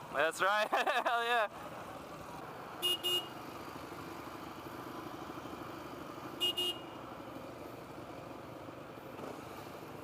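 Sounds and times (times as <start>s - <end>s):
vehicle horn double toots: 2.8s - 3.3s, 6.4s - 7.0s.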